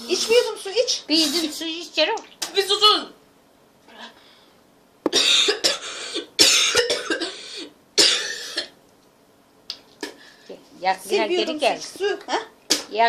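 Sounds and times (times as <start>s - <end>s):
person coughing hard: 5.1s - 8.8s.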